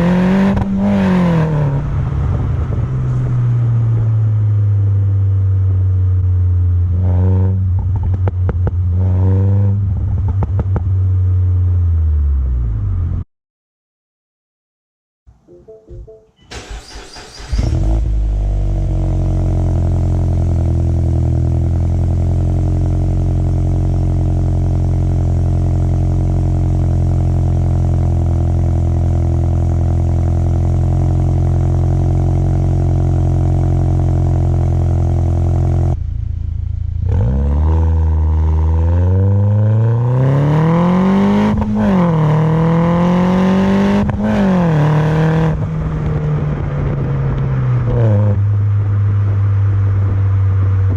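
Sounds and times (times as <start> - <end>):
car engine revving: 0.0 - 6.2, 16.5 - 27.0, 27.6 - 50.9
car engine cranking: 16.4 - 18.9
car engine idling: 16.4 - 37.4.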